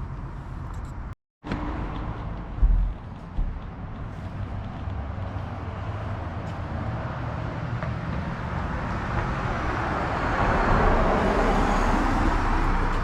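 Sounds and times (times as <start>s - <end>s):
car engine and tyres on road: 0.0s - 13.0s.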